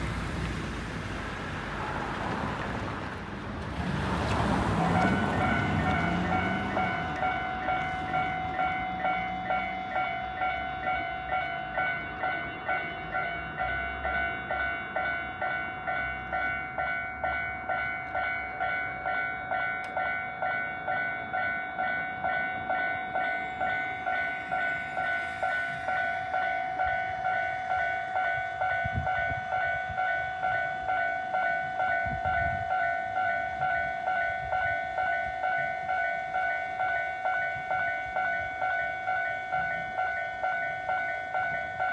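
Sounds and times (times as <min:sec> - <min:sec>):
electronic crossing bells ringing: 0:04.7 - 0:41.9.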